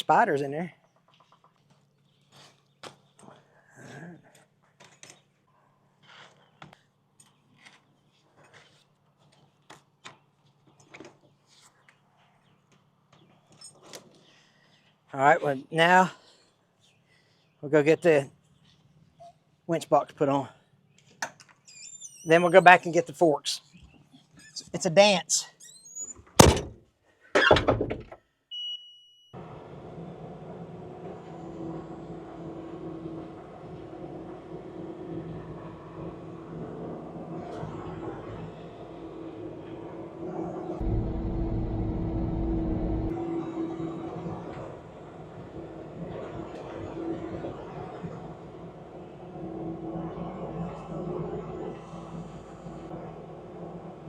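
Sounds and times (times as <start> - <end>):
heavy equipment engine running: 29.4 - 54.0
faint low hum: 40.5 - 54.0.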